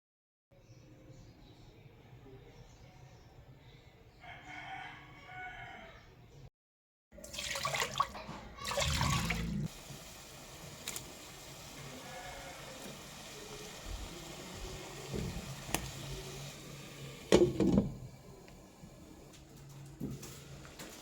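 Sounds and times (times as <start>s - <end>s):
rooster crowing faintly: 11.8s - 13.7s.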